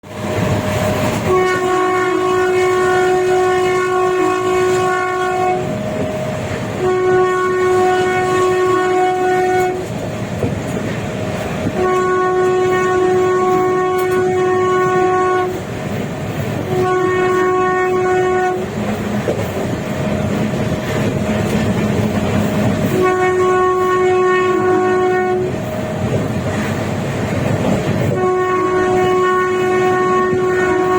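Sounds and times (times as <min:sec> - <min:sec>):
train rumble and clickety-clack: 0:00.0 - 0:30.9
locomotive air horn: 0:00.7 - 0:10.1, 0:11.5 - 0:19.1, 0:19.8 - 0:26.4, 0:27.9 - 0:30.9.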